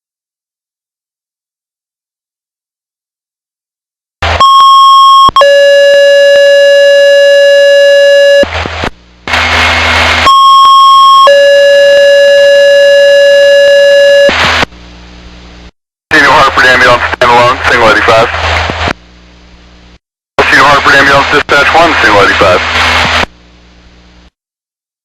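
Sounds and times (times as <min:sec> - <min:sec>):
two-tone paging tones over radio: 0:04.4 - 0:08.5
radio static bursts: 0:08.2 - 0:11.3, 0:14.2 - 0:14.8, 0:16.1 - 0:19.0, 0:20.4 - 0:23.5.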